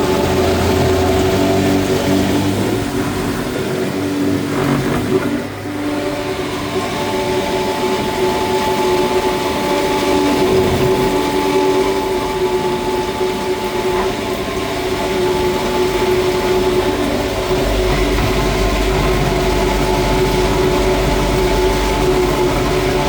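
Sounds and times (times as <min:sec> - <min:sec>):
pump motor humming with whine: 0:00.0 - 0:23.0
low rumble: 0:16.8 - 0:23.0.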